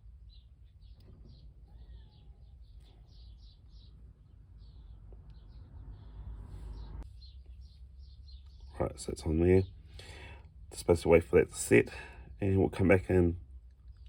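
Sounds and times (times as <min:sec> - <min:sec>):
small bird chirping: 0:00.0 - 0:10.2.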